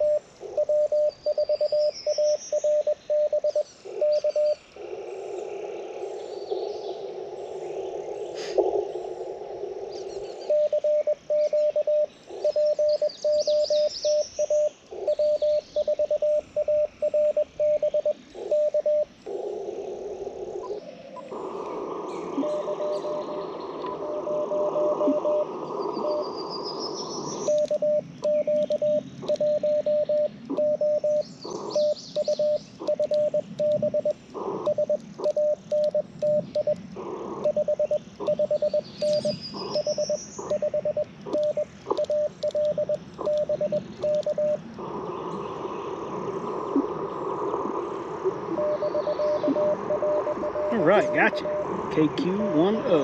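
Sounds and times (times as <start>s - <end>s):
faint incoming morse signal: 0.0s - 4.6s, 10.5s - 19.1s, 22.2s - 26.4s, 27.4s - 36.8s, 37.4s - 44.7s, 48.4s - 53.0s
morse code tone: 0.0s - 4.6s, 10.5s - 13.4s, 15.1s - 19.1s, 27.5s - 31.2s, 31.8s - 36.8s, 37.4s - 44.6s, 48.5s - 53.0s
birds chirping: 0.0s - 53.0s
radio band hiss: 7.1s - 10.6s, 18.2s - 53.0s.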